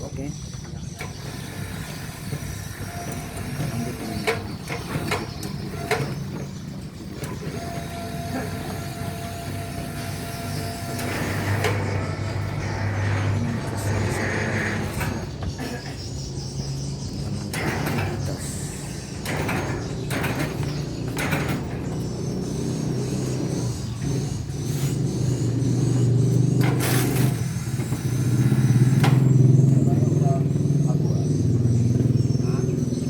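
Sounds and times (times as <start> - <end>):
motor humming: 0.2 - 33.0
short knocks and clatters: 17.0 - 29.7.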